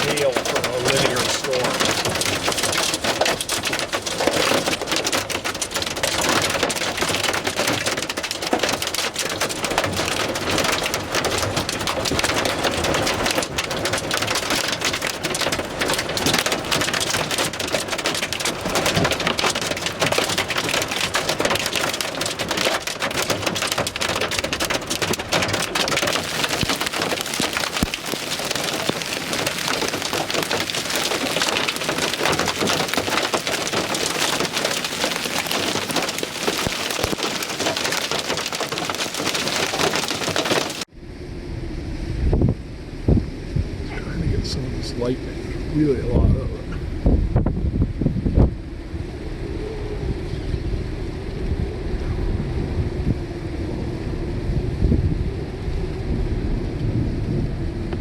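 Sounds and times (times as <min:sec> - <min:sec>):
heavy rain and hail pelting: 0:00.0 - 0:40.9.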